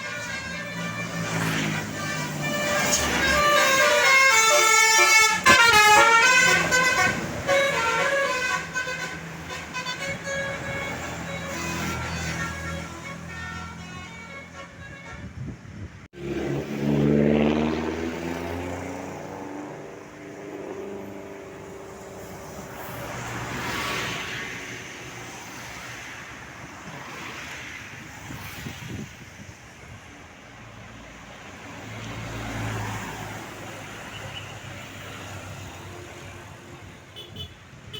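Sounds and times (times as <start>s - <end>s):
road traffic passing: 0.0s - 37.9s
vehicle engine passing close: 16.2s - 24.6s.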